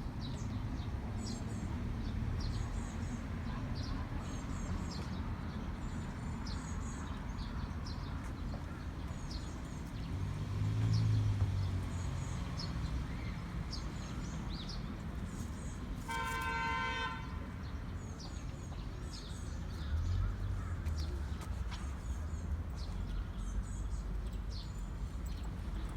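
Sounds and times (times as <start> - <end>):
vehicle horn: 16.1 - 17.6.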